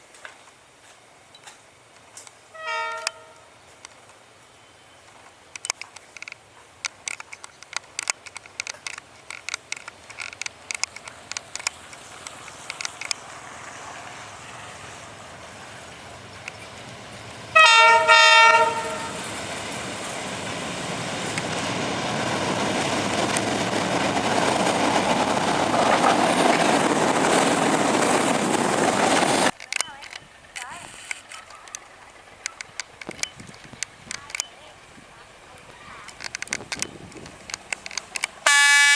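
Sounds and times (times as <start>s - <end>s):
train approaching rumble: 0.4s - 38.9s
train horn blasts: 2.5s - 3.5s, 17.5s - 19.3s, 38.4s - 38.9s
sharp clicks: 5.5s - 13.2s, 29.5s - 34.6s, 36.0s - 38.5s.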